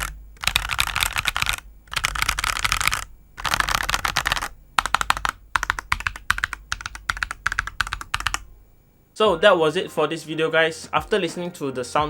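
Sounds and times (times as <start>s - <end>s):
mechanical keyboard typing: 0.0s - 8.5s.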